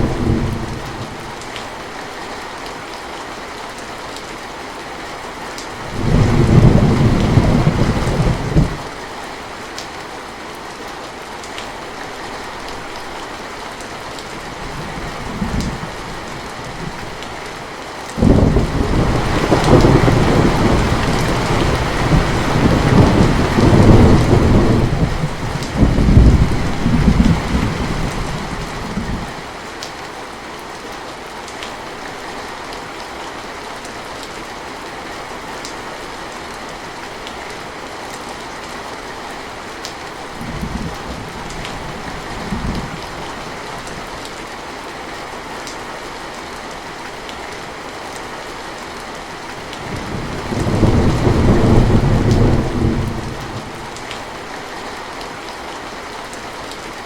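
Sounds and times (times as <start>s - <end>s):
steady rain: 0.0s - 57.0s
rolling thunder: 18.2s - 29.3s, 49.9s - 54.0s.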